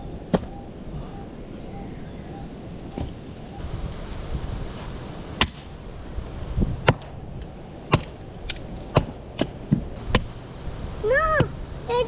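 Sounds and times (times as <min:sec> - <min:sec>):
steady low rumble: 0:00.0 - 0:12.0
firewood cracking: 0:02.9 - 0:10.8.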